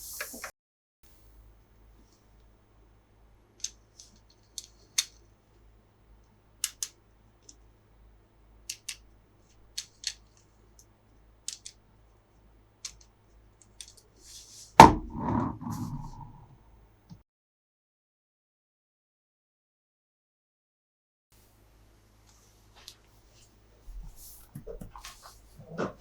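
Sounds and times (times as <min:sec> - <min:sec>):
loud knock with ringing clatter: 0:14.8 - 0:16.4.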